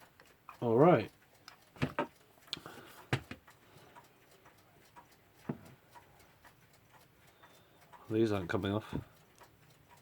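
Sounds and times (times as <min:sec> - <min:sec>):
metallic clicks of tools on clock: 0:00.0 - 0:10.0.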